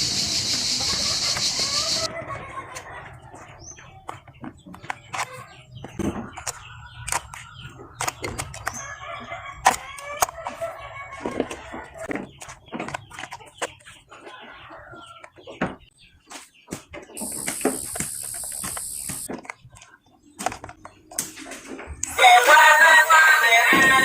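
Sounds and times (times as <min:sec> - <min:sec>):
chickens clucking: 0:00.0 - 0:24.0
sharp clicks and knocks: 0:16.7 - 0:22.0.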